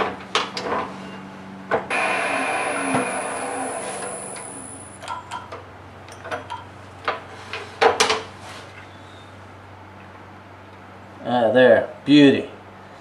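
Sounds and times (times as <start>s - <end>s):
steady low hum: 0.0s - 13.0s
wood lathe whine: 1.9s - 5.0s.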